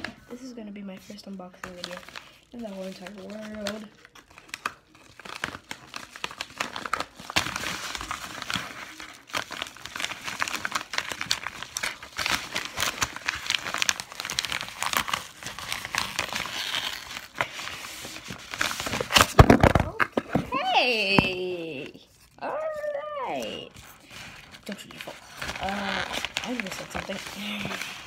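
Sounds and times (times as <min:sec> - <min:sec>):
packaging crinkling: 0:01.1 - 0:20.6, 0:21.2 - 0:28.0.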